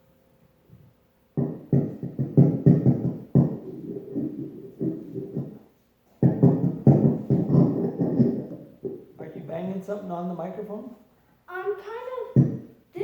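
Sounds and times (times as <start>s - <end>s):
toy handling thumps on microphone: 6.2s - 9.0s.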